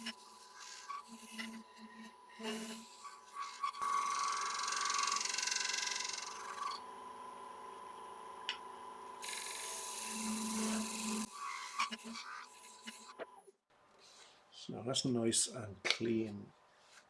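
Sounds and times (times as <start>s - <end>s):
wood lathe whining: 0.0s - 6.9s, 9.2s - 13.3s.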